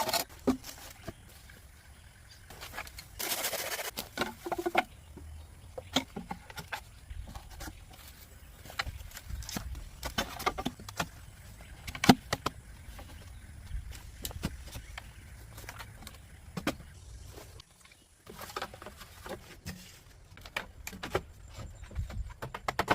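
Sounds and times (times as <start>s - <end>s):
sharp knocks and clicks: 21.9s - 22.9s.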